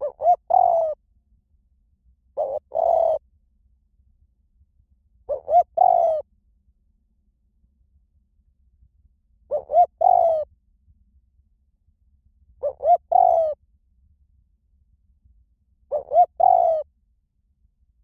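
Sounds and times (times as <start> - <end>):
dove cooing: 0.0 - 1.0, 2.4 - 3.2, 5.3 - 6.2, 9.5 - 10.5, 12.6 - 13.6, 15.9 - 16.8.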